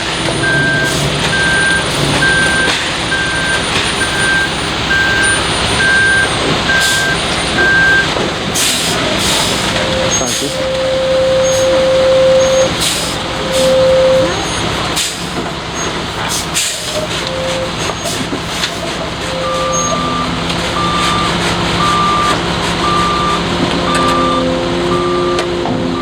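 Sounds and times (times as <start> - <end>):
concrete mixer truck running: 0.0 - 26.0
backup alarm beeping: 0.4 - 14.6, 17.2 - 18.1, 19.3 - 26.0.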